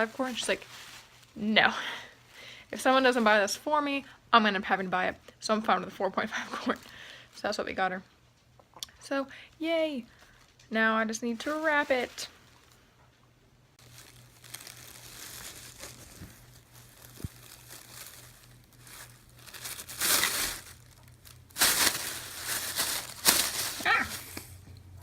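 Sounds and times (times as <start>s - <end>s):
packaging crinkling: 11.3s - 12.8s, 13.8s - 24.6s.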